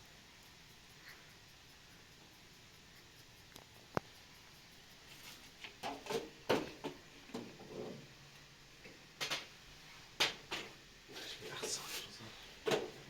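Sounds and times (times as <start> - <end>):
objects knocking and clicking: 5.7 - 8.0, 9.2 - 9.5.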